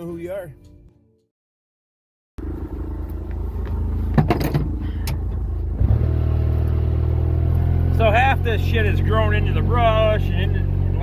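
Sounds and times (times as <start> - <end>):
engine running steadily: 2.4 - 11.0.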